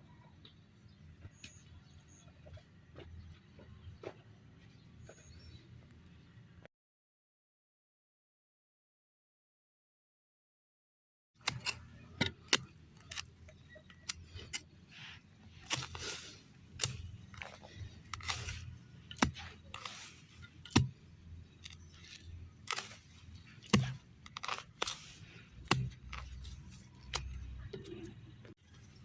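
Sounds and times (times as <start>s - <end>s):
plants rustling and crackling: 12.9s - 29.0s.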